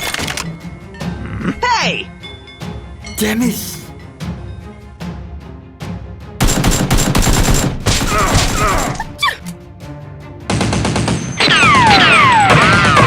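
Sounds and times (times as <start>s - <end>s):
background music: 0.0s - 11.6s
rapid gunfire: 6.4s - 8.8s.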